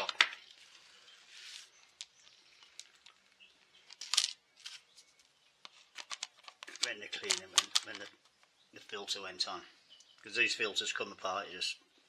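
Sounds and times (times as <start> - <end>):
clicks of handled parts: 5.6 - 8.2.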